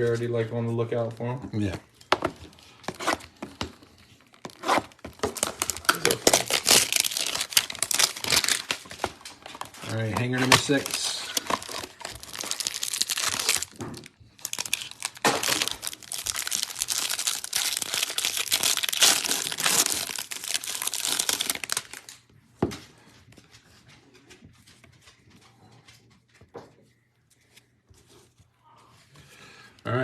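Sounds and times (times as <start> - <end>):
packaging crinkling and tearing: 2.8 - 22.2.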